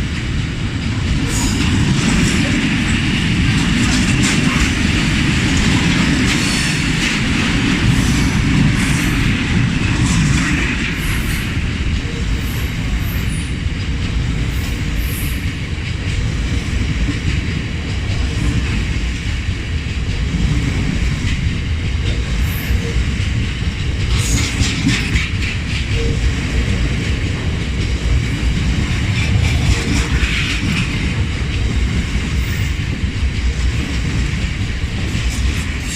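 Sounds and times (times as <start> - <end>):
diesel locomotive passing: 0.0 - 35.9
train wheels clattering: 0.0 - 35.9.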